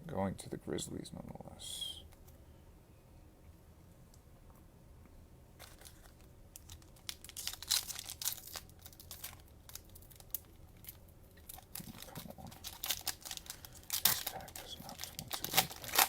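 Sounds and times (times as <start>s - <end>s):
cellophane wrapper crinkling and tearing: 5.6s - 16.0s.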